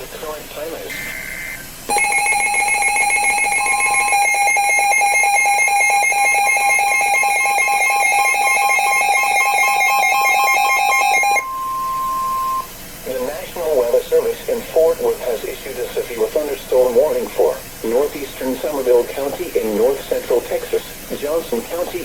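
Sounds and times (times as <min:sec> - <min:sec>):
two-note electronic alert tone: 0:01.9 - 0:12.7.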